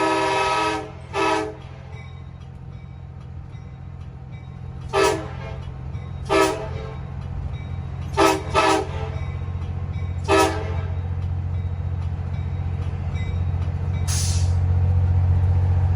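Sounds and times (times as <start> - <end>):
air horn toots: 0.0 - 1.6, 4.9 - 5.6, 6.3 - 6.9, 8.2 - 9.2, 10.3 - 10.8.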